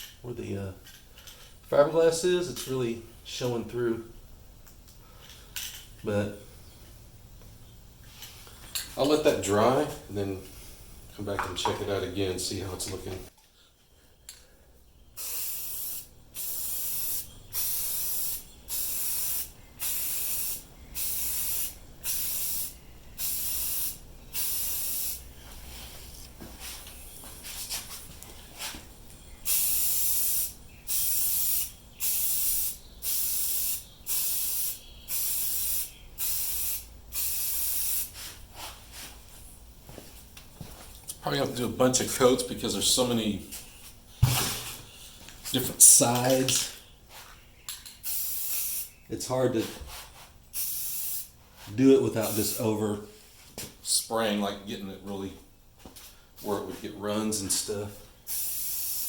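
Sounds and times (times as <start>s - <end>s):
aerosol spray can hissing: 15.2s - 25.3s, 29.5s - 38.4s, 48.0s - 49.0s, 50.6s - 51.3s, 58.3s - 59.0s.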